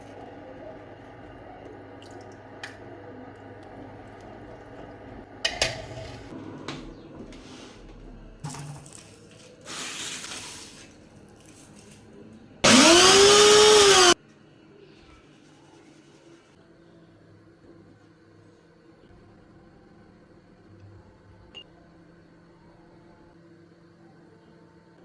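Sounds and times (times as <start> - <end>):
kitchen blender motor: 12.6 - 14.2.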